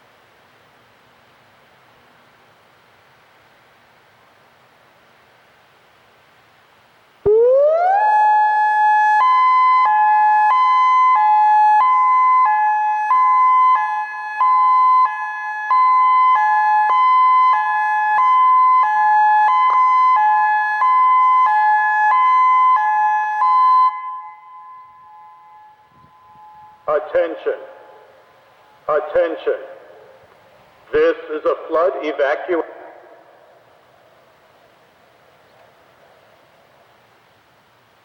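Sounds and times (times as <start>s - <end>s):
hi-lo warning siren: 7.2s - 30.3s.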